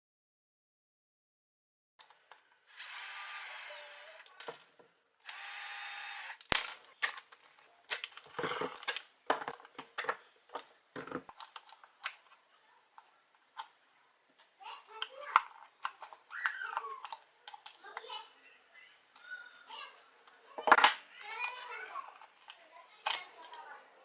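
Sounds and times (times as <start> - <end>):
small electric motor whining: 2.7 - 4.2, 5.2 - 6.4.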